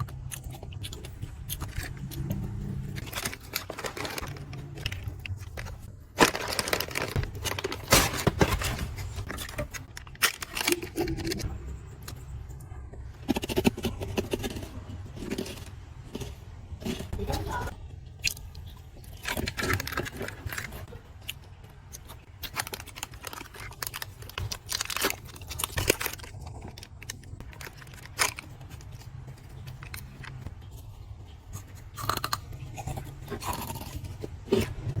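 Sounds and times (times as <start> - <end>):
plastic packaging crinkling: 1.5 - 11.4, 22.3 - 30.4.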